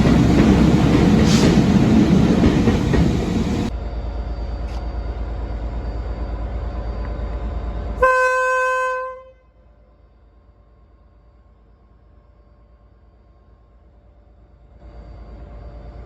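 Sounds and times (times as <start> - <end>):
train rumbling: 0.0 - 16.0
train horn: 8.0 - 9.7.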